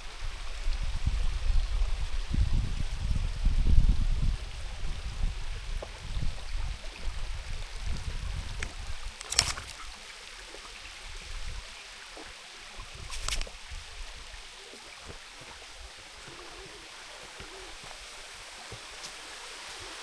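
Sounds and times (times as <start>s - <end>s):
flowing water: 0.0s - 20.0s
wind buffeting microphone: 0.2s - 9.9s.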